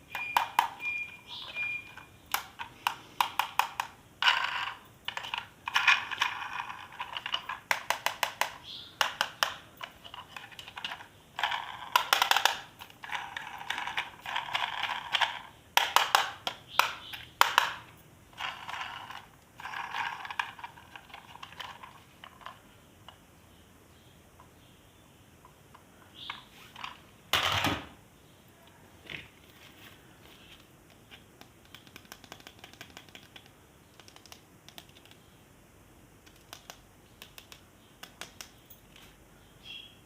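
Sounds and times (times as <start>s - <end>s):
plastic toy parts clicking: 2.3s - 23.2s, 30.9s - 35.2s, 36.2s - 38.6s.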